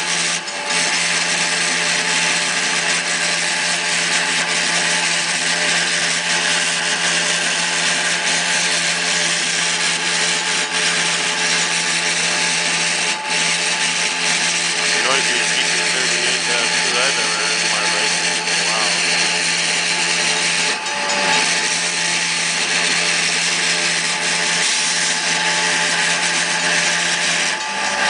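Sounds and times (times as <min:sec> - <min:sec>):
diesel locomotive rasping noise: 0:14.5 - 0:20.0.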